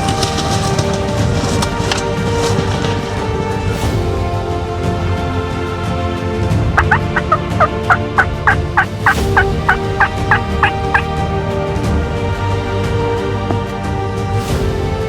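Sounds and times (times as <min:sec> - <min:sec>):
background music: 0:00.0 - 0:15.0
turkey yelps: 0:06.8 - 0:11.1.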